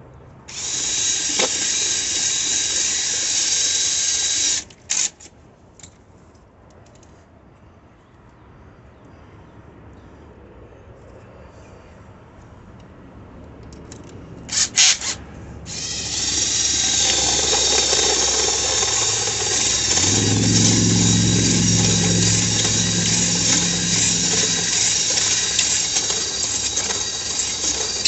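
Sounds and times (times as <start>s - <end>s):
power tool motor whining: 0.5s - 4.7s, 15.7s - 28.0s
high squeals: 15.7s - 28.0s
steady low hum: 15.8s - 28.0s.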